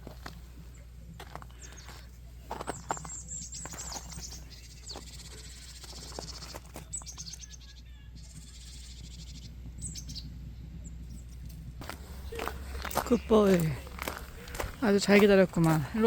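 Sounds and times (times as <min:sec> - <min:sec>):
steady low hum: 0:00.0 - 0:16.0
bird chirps and trills: 0:01.5 - 0:11.5.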